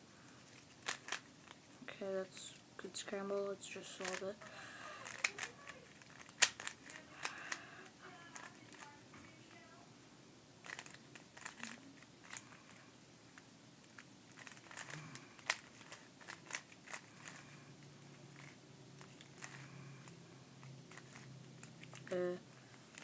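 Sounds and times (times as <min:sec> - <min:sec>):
plastic cube clicking: 0:04.0 - 0:04.3, 0:05.0 - 0:07.6, 0:10.7 - 0:12.5, 0:14.4 - 0:17.4.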